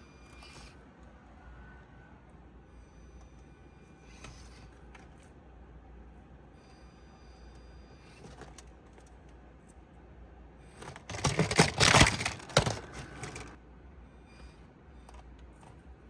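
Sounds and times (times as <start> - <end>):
faint steady hum: 0.0 - 16.0
toy car rattling clicks: 10.8 - 13.6.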